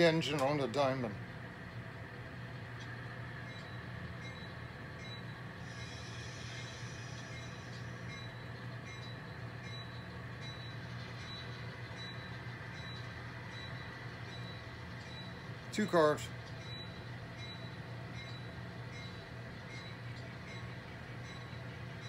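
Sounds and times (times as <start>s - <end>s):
model train motor hum: 5.6s - 9.1s.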